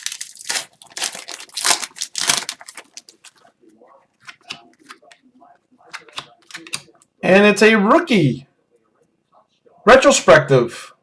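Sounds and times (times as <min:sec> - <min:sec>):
cards rustling: 0:00.0 - 0:03.5
plastic wrapper tearing and crinkling: 0:00.0 - 0:03.5.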